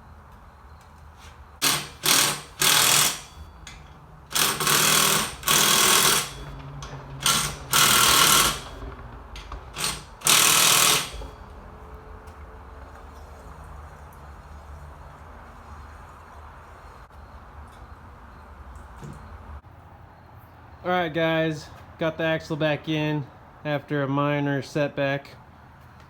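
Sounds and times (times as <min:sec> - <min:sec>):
handheld power tool running: 0:01.6 - 0:03.4, 0:04.3 - 0:11.4.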